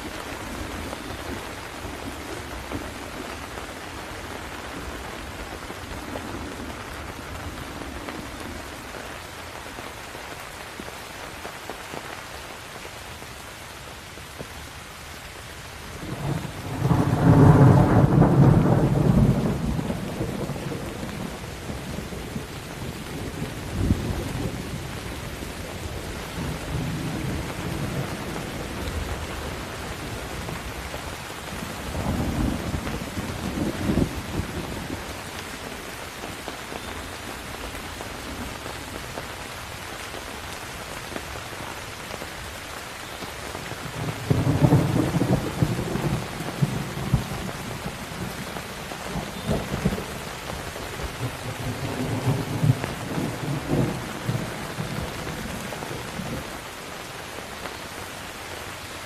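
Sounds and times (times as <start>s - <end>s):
heavy rain hissing: 0.0s - 59.0s
thunder rumbling: 16.0s - 36.4s, 43.8s - 56.6s.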